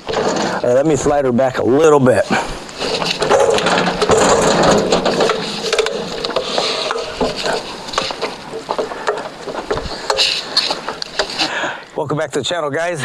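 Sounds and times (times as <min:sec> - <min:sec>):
sawmill head rolling and rattling: 0:00.0 - 0:11.5
metallic clicks and knocks: 0:02.7 - 0:11.4.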